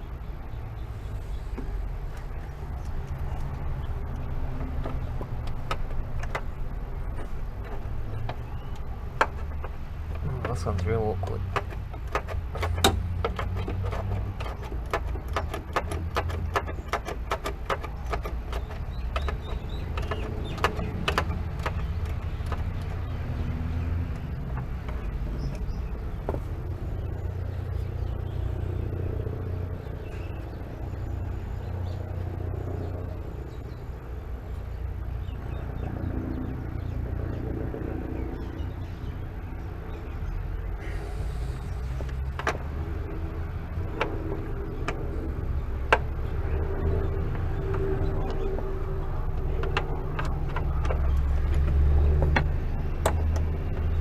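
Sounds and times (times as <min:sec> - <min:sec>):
steady low hum: 0:00.0 - 0:54.0
handling noises: 0:01.2 - 0:27.9.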